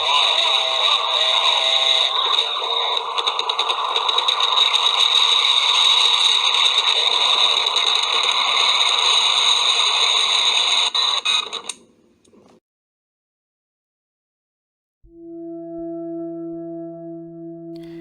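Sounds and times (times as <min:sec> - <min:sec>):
hissy radio-like noise: 0:00.0 - 0:12.5
crackle: 0:00.0 - 0:12.6
high steady tone: 0:15.1 - 0:18.0.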